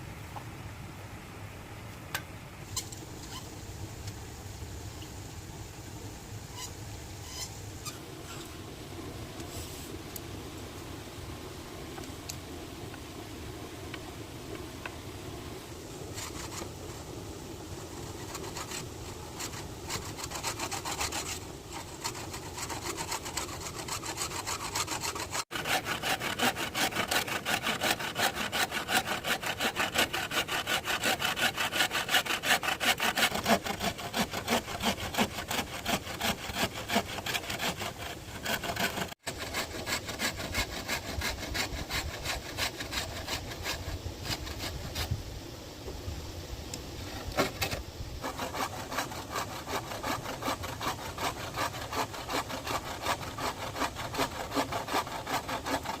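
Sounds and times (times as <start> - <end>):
hand saw cutting bamboo: 16.1 - 16.7, 17.9 - 45.2, 47.3 - 56.0.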